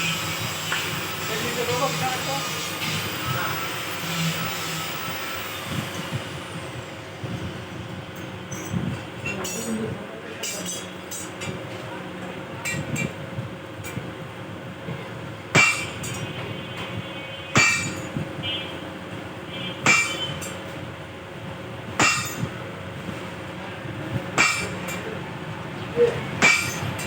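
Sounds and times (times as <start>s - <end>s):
hammer striking metal: 15.6s - 16.4s, 17.6s - 18.1s, 19.8s - 20.6s, 22.0s - 22.5s, 24.4s - 25.1s, 26.4s - 27.0s.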